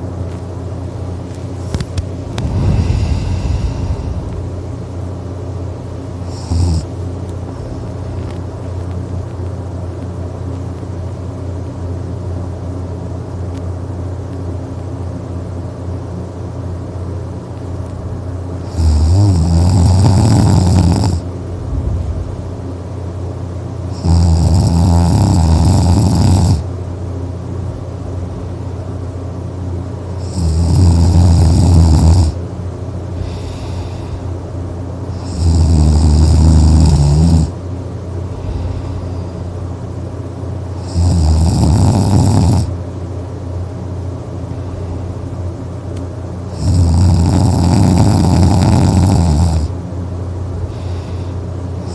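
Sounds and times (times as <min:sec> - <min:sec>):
steady low hum: 0:00.0 - 0:51.9
person snoring loudly: 0:02.4 - 0:04.4, 0:06.2 - 0:06.9, 0:18.6 - 0:21.3, 0:23.9 - 0:26.6, 0:30.2 - 0:32.4, 0:33.2 - 0:34.2, 0:35.1 - 0:37.6, 0:40.8 - 0:42.7, 0:46.5 - 0:49.8.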